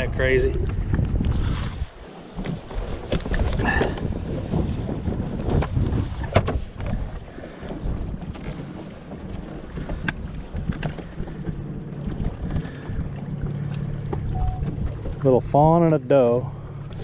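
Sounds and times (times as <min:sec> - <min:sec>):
wind noise on microphone: 0:00.0 - 0:13.4
boat motor humming: 0:00.0 - 0:17.0.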